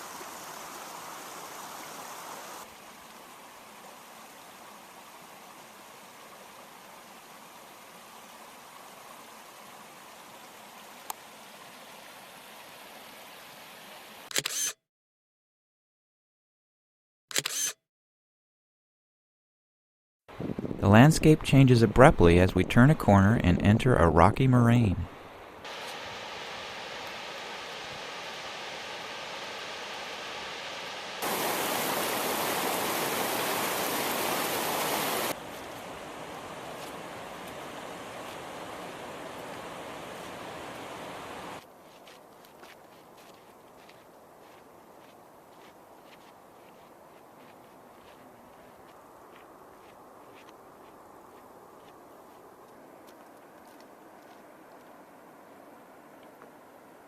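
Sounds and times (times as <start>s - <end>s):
faint outdoor hiss: 0.0s - 14.3s, 20.3s - 57.0s
soft water rushing: 0.0s - 14.3s, 25.1s - 57.0s
camera shutter double-click: 14.3s - 14.8s, 17.3s - 17.8s.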